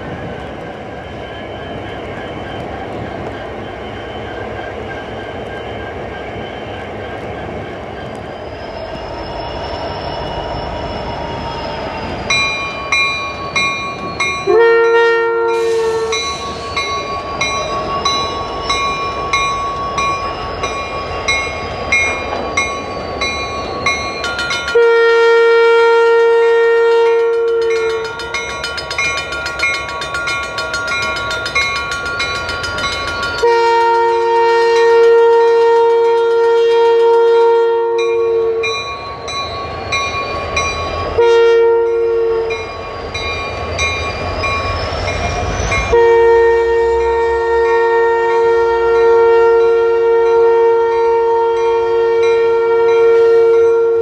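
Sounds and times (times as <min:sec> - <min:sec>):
moving train noise: 0:00.0 - 0:54.0
locomotive horn blowing: 0:14.4 - 0:16.4, 0:24.7 - 0:28.1, 0:33.4 - 0:38.8, 0:41.2 - 0:42.6, 0:45.8 - 0:54.0.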